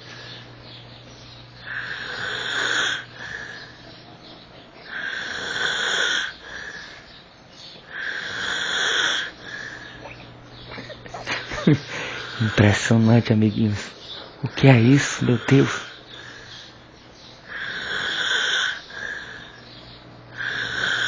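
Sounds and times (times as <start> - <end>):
man snoring heavily: 1.6 - 3.7, 4.9 - 6.9, 7.9 - 10.0, 11.8 - 12.7, 15.2 - 16.5, 17.5 - 19.6, 20.4 - 21.0.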